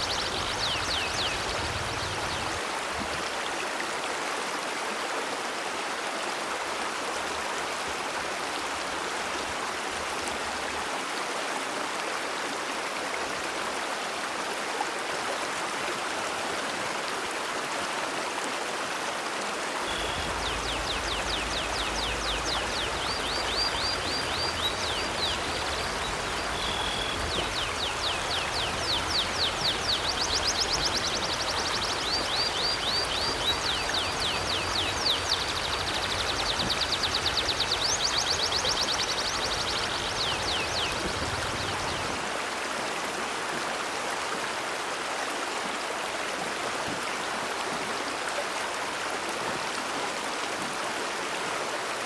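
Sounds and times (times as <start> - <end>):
river water rushing: 0.0 - 52.0
bird chirping rapidly: 19.8 - 41.0.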